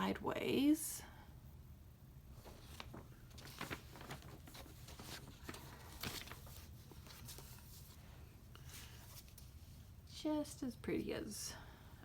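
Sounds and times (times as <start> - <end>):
paper rustling: 2.4 - 8.0, 8.6 - 9.7.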